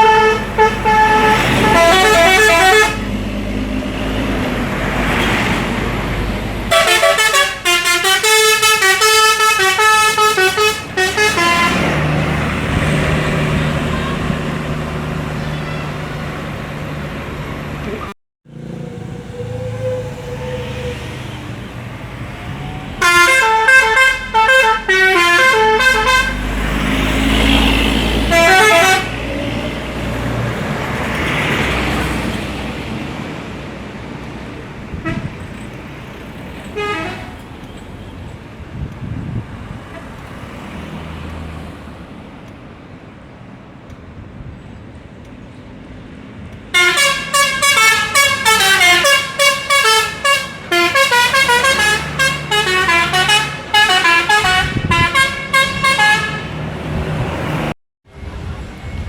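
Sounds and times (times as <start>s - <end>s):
bus horns playing a quick tune: 0.0s - 3.2s, 6.7s - 12.2s, 13.4s - 16.3s, 23.0s - 26.6s, 28.3s - 29.3s, 35.0s - 35.4s, 36.8s - 37.4s, 46.7s - 56.7s
large vehicle driving past: 11.4s - 23.0s.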